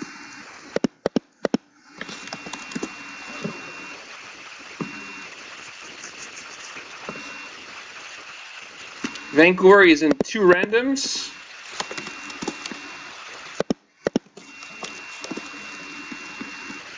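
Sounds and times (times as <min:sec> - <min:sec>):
steady high-pitched tone: 0:02.0 - 0:13.2
sharp clicks: 0:11.7 - 0:12.8.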